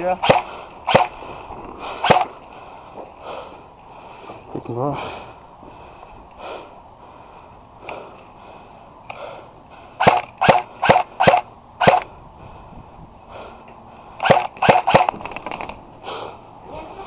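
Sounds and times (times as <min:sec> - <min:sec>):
airsoft rifle shots: 0:00.0 - 0:01.3, 0:02.0 - 0:02.4, 0:10.0 - 0:12.1, 0:14.2 - 0:15.7.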